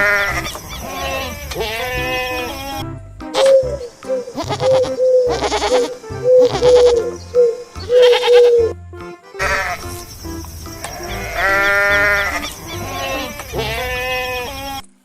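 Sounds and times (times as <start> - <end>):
goats bleating: 0.0 - 2.8, 4.4 - 7.0, 9.2 - 14.8
background music: 0.0 - 14.8.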